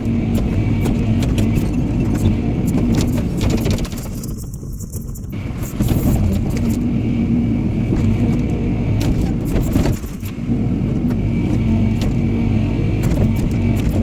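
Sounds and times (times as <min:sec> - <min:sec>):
diesel engine running: 0:00.0 - 0:04.6, 0:05.2 - 0:14.0.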